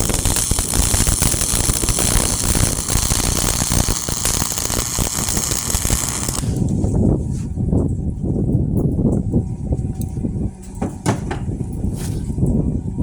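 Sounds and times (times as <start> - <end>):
welding arc crackling: 0.0 - 6.7.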